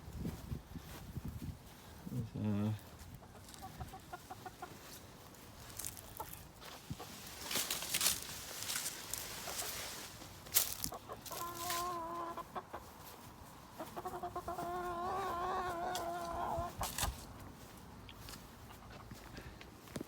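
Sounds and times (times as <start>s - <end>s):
hen calling: 10.7s - 12.9s.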